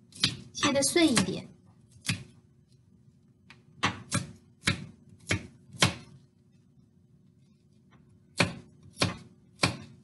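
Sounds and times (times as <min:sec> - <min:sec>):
knife chopping walnuts: 0:00.0 - 0:02.4, 0:03.8 - 0:06.2, 0:08.3 - 0:10.0.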